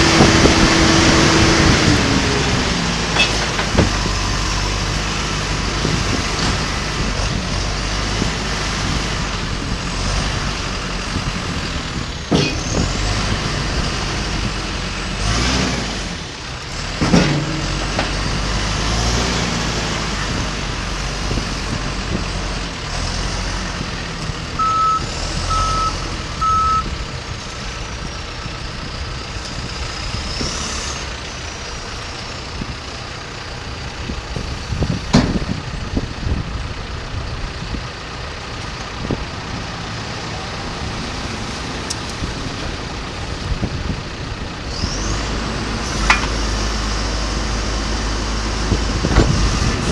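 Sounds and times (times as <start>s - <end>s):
diesel engine running: 0.0s - 49.9s
sharp clunks: 12.3s - 12.8s
short beeps: 24.6s - 26.9s.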